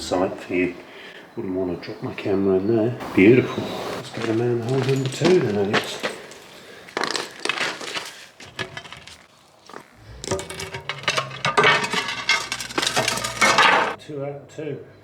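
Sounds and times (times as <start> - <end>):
metal manhole cover clinking: 4.0 - 14.0.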